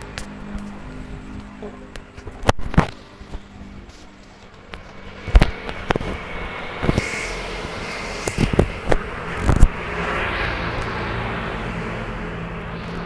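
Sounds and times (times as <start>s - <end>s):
strong wind blowing: 5.2s - 13.0s.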